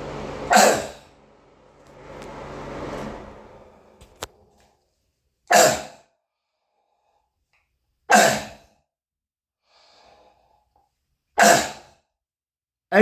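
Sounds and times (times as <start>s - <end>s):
faint breath: 9.6s - 10.6s.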